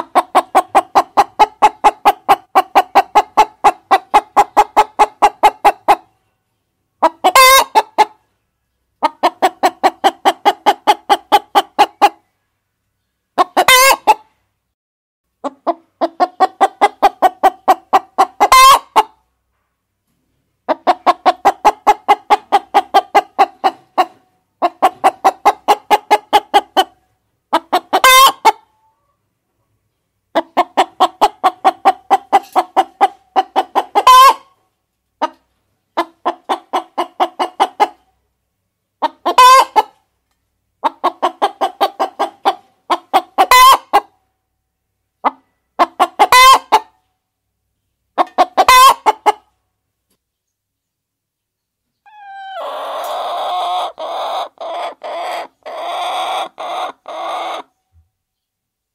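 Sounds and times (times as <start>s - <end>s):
hen clucking: 0.0s - 6.2s, 7.0s - 8.3s, 8.9s - 12.3s, 13.0s - 14.4s, 15.4s - 19.3s, 20.6s - 29.2s, 30.3s - 38.3s, 39.0s - 44.3s, 45.2s - 47.1s, 48.1s - 49.6s, 51.9s - 58.0s
hen squawking: 52.1s - 57.7s.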